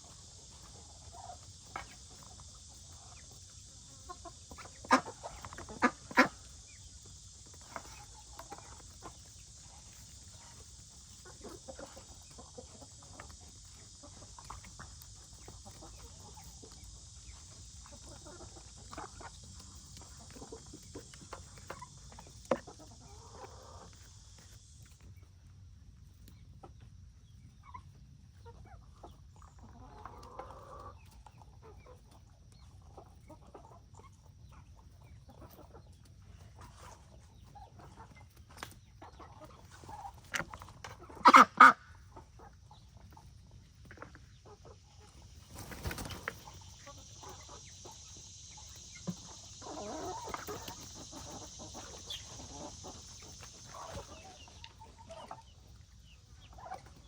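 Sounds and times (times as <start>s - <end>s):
chickens clucking: 0.0s - 57.0s
loud short chicken calls: 41.2s - 41.8s.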